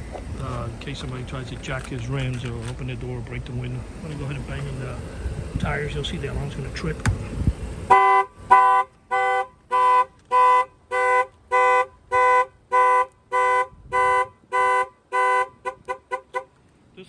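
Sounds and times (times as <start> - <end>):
knock on tyre: 7.0 - 7.5.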